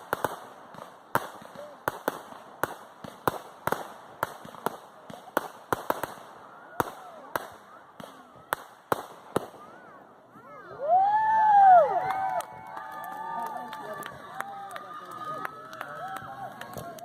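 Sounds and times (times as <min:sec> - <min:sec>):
fireworks bangs: 0:00.0 - 0:10.4
whistling fireworks: 0:00.0 - 0:10.4.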